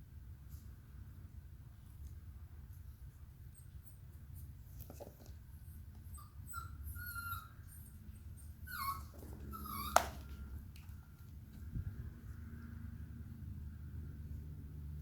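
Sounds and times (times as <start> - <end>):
dog whining: 6.0 - 10.6.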